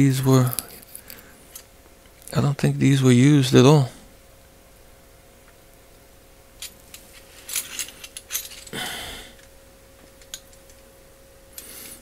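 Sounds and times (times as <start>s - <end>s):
metal wrenches clinking: 6.6s - 8.7s.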